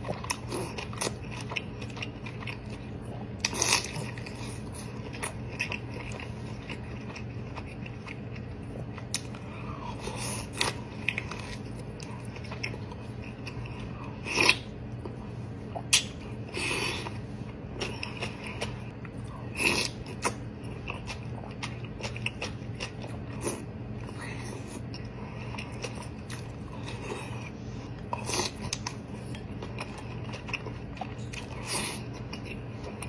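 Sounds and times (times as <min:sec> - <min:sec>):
biting and chewing food: 0:00.0 - 0:33.0
steady low hum: 0:00.0 - 0:33.0.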